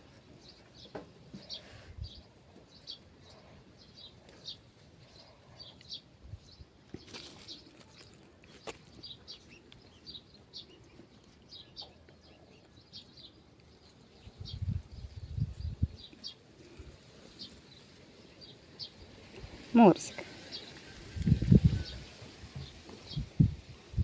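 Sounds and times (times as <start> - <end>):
rustle: 6.8 - 10.3, 15.8 - 24.0.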